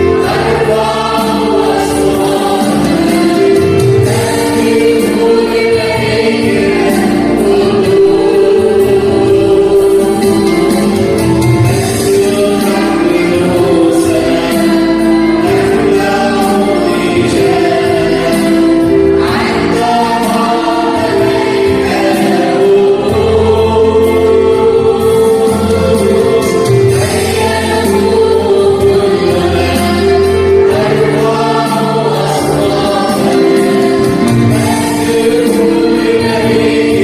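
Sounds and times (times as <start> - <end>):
choir singing a hymn: 0.0 - 37.0
instrumental backing: 0.0 - 37.0.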